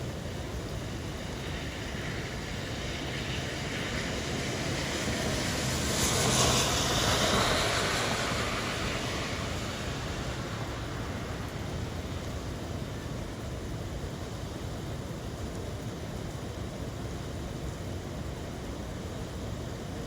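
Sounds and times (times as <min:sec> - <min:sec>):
rain hiss: 0:00.0 - 0:20.0
car tyres swishing on wet road: 0:00.2 - 0:13.7.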